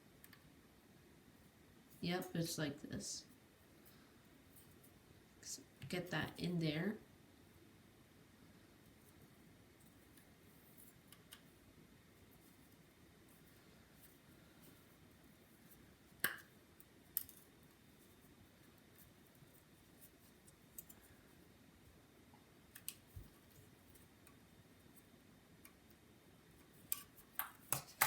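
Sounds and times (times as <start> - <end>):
small clicks of laptop parts: 17.1 - 17.5, 20.4 - 21.1, 22.7 - 24.4, 26.6 - 28.0.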